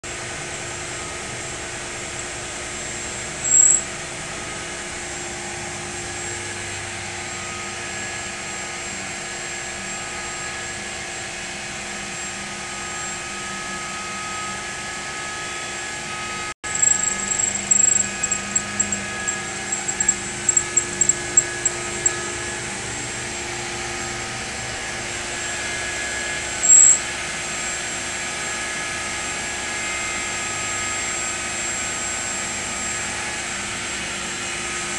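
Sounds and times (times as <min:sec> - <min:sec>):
short high-pitched squeaks: 0:03.4 - 0:03.9, 0:16.7 - 0:22.3, 0:26.6 - 0:27.0
lathe and router whirring: 0:12.2 - 0:28.8.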